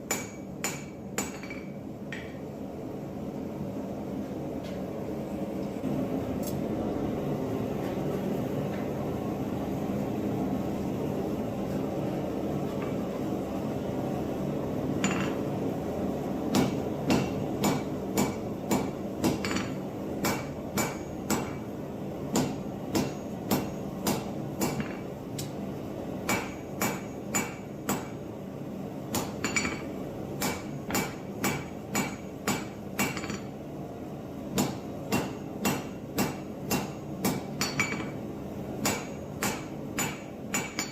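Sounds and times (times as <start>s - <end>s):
hammer striking steel on anvil: 0.0s - 2.4s, 15.0s - 15.4s, 16.5s - 21.6s, 22.3s - 25.1s, 26.2s - 28.2s, 29.1s - 33.6s, 34.6s - 38.2s, 38.8s - 40.9s.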